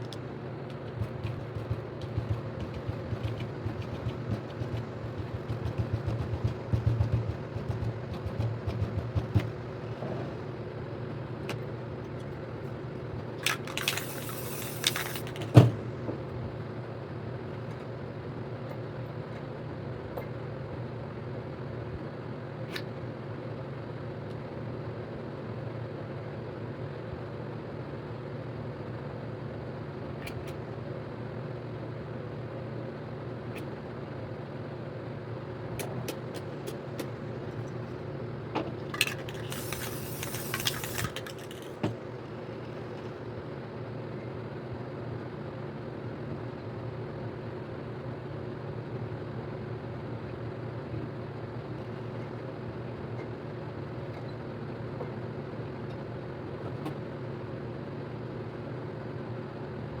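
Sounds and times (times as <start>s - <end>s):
spray paint can hissing: 13.6s - 15.4s, 39.3s - 41.8s.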